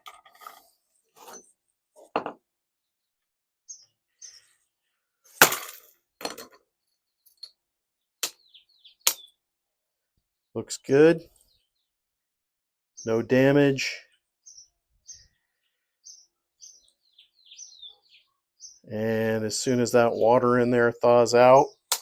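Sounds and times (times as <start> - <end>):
birds chirping faintly: 3.7 - 5.3, 6.2 - 12.0, 13.0 - 22.0.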